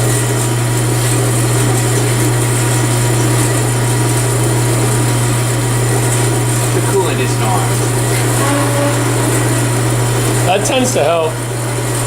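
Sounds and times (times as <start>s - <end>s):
metal-cutting bandsaw humming: 4.0s - 12.0s.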